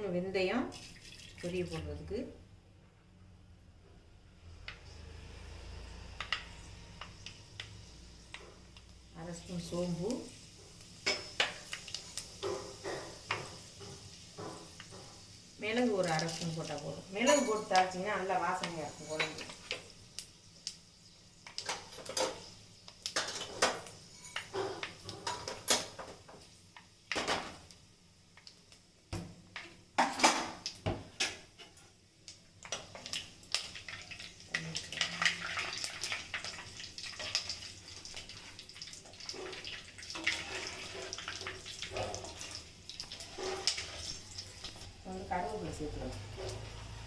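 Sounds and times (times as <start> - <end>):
spices sizzling in oil: 4.4 - 47.0
metal spoon scraping a pan: 18.5 - 19.9, 23.2 - 25.9, 39.2 - 44.7.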